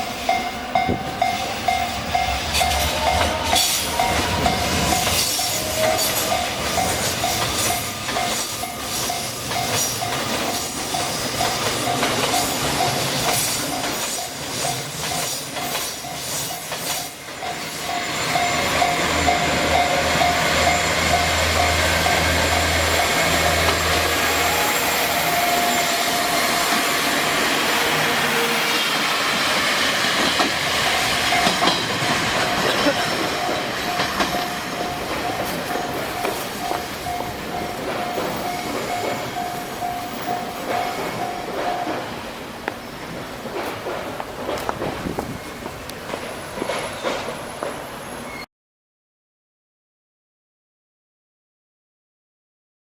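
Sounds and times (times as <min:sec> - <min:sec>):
level crossing warning bell: 0:00.0 - 0:28.6, 0:30.4 - 0:43.8
train running drone: 0:00.0 - 0:48.4
wheels clattering on rail: 0:00.0 - 0:48.4.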